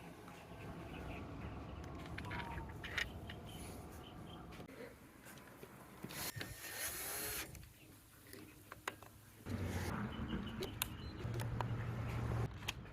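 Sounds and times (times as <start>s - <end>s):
small electric motor whirring: 6.1s - 7.5s.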